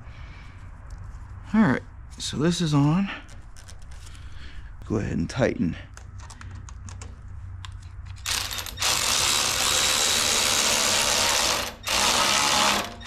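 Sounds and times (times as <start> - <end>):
power tool running: 8.3 - 13.0.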